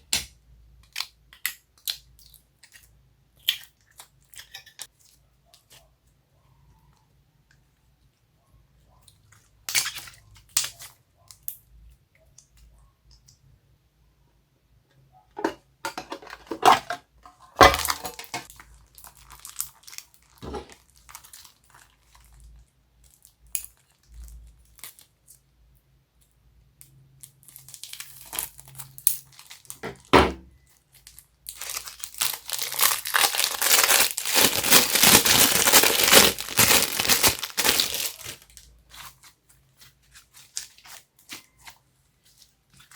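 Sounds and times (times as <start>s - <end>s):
slime crinkling and crackling: 17.6s - 25.3s, 27.2s - 29.8s, 30.8s - 42.9s.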